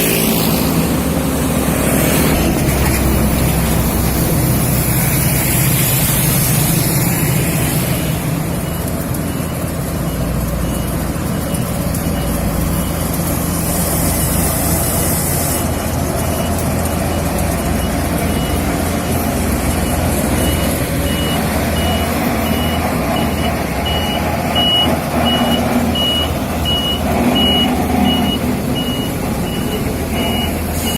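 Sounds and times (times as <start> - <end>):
heavy machinery engines running: 0.0 - 30.9
reversing alarm beeping: 6.9 - 30.9.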